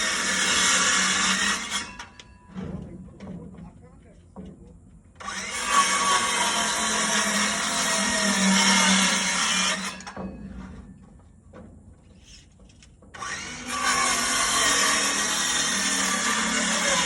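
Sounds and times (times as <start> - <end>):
power tool humming under load: 0.0 - 2.2, 5.2 - 10.2, 13.2 - 17.0.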